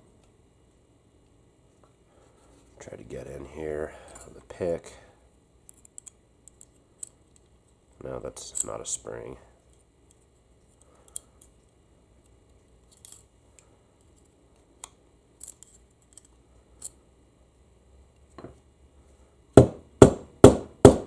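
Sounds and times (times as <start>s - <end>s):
loud sharp knocks: 19.6s - 21.0s.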